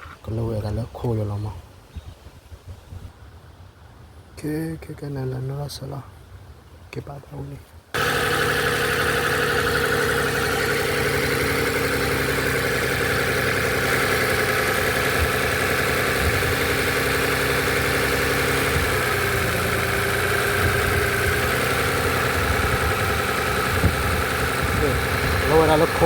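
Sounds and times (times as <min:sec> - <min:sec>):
engine idling: 0:08.0 - 0:26.0.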